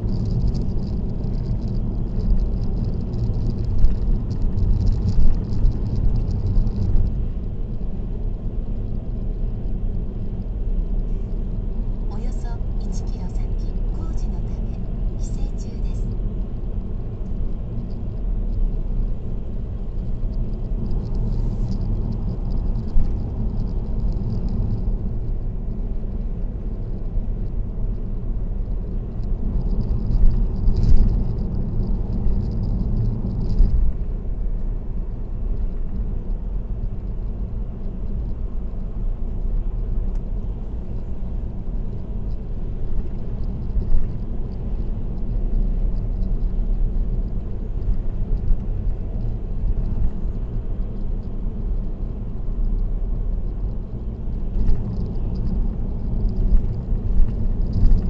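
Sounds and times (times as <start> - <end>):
car tyre and road rumble: 0.0 - 58.0.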